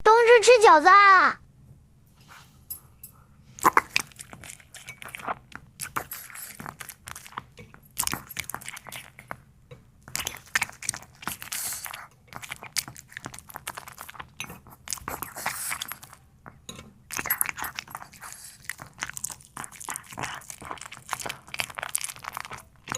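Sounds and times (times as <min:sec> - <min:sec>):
dog crunching food: 0:03.6 - 0:09.4, 0:10.0 - 0:16.3, 0:17.1 - 0:22.9.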